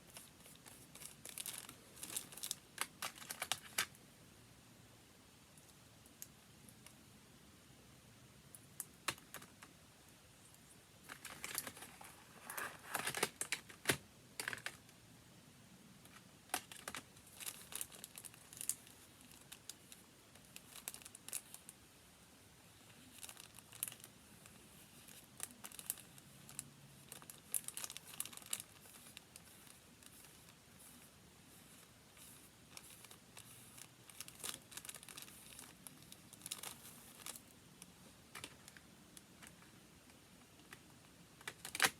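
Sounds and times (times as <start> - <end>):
paper crinkling and rustling: 0.1 - 3.9, 11.0 - 14.8, 16.1 - 21.7, 22.9 - 37.5, 41.4 - 41.9.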